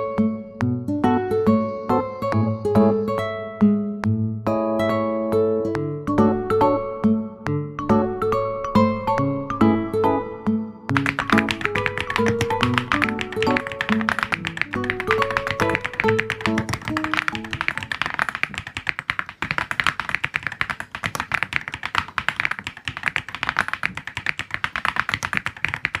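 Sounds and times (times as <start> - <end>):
melodic music: 4.6 - 18.0
fast mechanical keyboard typing: 10.9 - 26.0.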